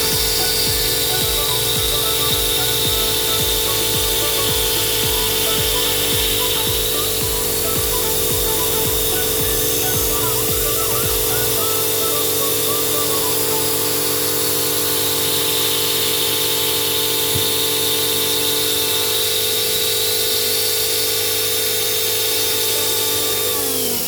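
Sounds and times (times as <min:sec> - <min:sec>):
router spindle whine: 0:00.0 - 0:24.0.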